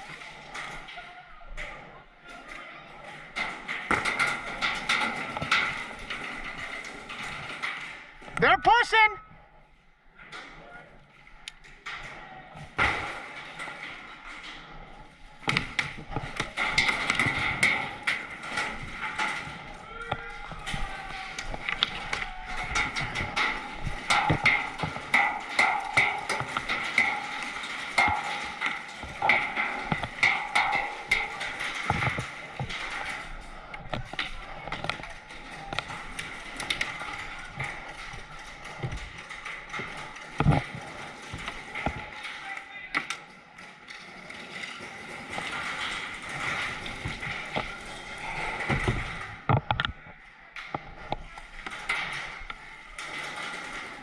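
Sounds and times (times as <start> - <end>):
paintballs smacking hard surfaces: 15.4 - 43.3.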